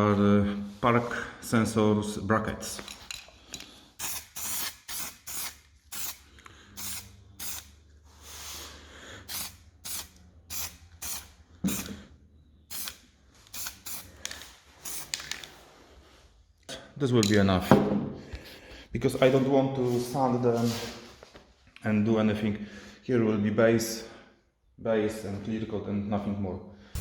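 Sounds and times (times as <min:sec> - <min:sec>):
spray nozzle hissing bursts: 0:04.0 - 0:06.2, 0:06.8 - 0:08.6, 0:09.3 - 0:12.0, 0:12.7 - 0:15.2
knock: 0:17.7 - 0:18.1.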